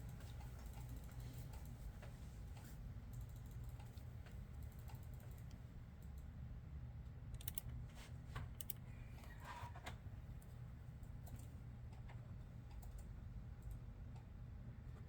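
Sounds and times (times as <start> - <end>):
keyboard typing: 7.4 - 7.6.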